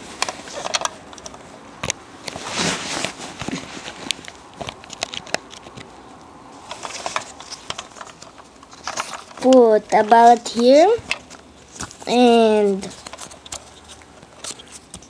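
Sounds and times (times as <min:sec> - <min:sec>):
rustle: 0:02.2 - 0:05.4, 0:06.5 - 0:09.5.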